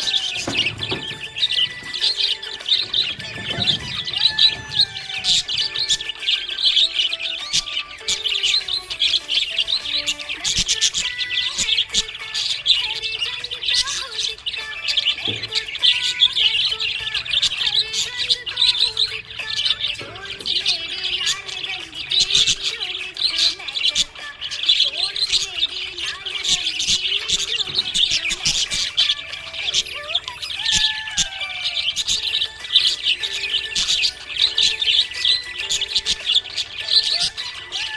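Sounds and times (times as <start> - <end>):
parrots chirping and chattering: 0.0 - 37.9.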